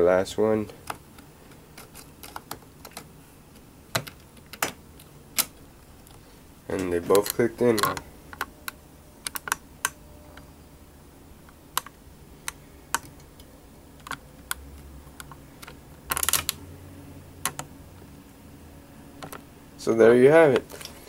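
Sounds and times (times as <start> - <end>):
hands handling computer parts: 0.7 - 10.5, 20.5 - 21.0.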